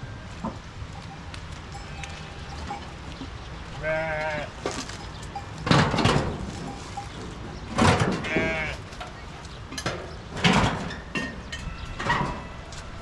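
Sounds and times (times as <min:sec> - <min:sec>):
sheep bleating: 0:03.8 - 0:04.6, 0:08.2 - 0:08.9.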